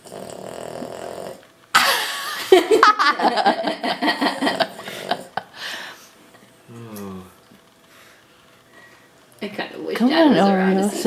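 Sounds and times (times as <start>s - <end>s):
dog snoring: 0.0s - 1.5s
person laughing loudly: 1.8s - 5.6s.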